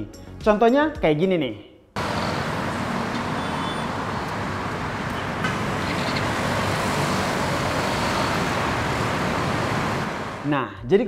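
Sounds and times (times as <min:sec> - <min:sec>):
passing road traffic: 0:02.0 - 0:10.5.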